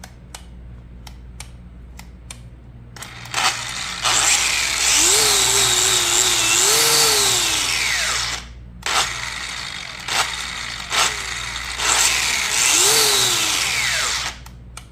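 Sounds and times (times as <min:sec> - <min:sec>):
angle grinder running: 0:03.0 - 0:14.4.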